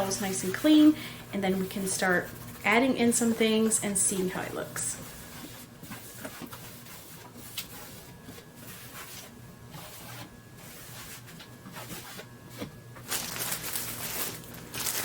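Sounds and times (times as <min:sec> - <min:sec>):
cloth rubbing shelves: 0:00.0 - 0:15.0.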